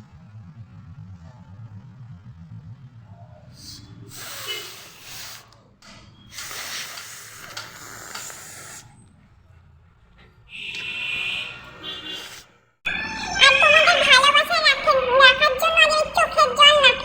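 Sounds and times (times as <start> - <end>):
person blowing nose: 4.1 - 5.4, 6.3 - 8.9, 12.1 - 12.5.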